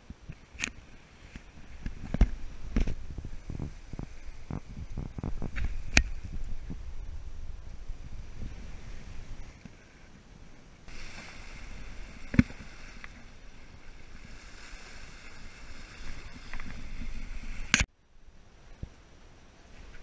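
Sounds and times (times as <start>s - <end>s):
water rushing past hull: 10.8s - 17.9s.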